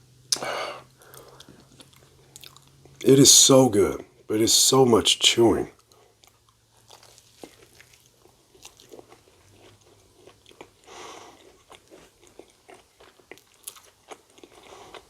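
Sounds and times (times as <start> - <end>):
chewing crunches: 0.3 - 3.0, 5.8 - 15.0.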